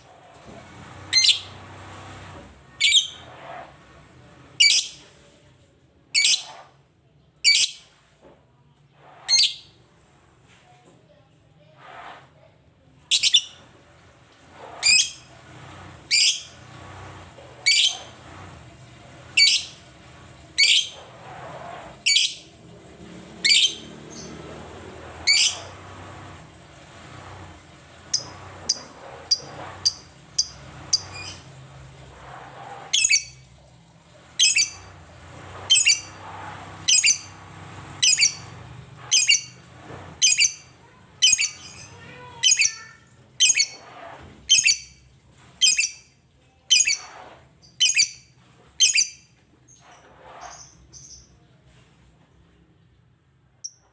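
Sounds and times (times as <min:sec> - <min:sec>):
lovebird chirping: 0:35.7 - 0:36.1, 0:36.9 - 0:37.3, 0:38.0 - 0:38.5.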